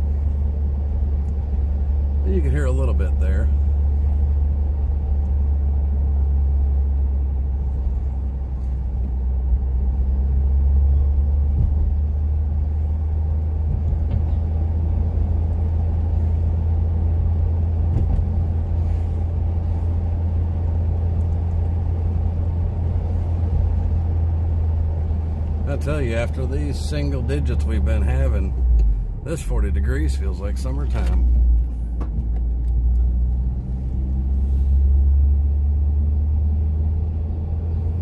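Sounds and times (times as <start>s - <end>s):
car engine and road drone: 0.0s - 38.0s.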